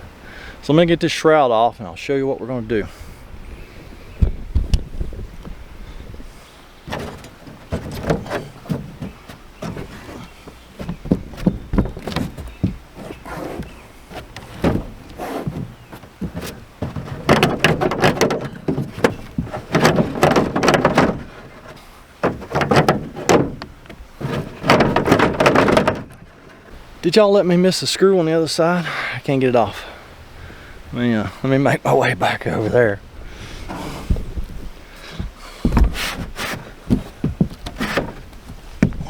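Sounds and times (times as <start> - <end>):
plastic shroud knocking and rattling: 6.9 - 26.7.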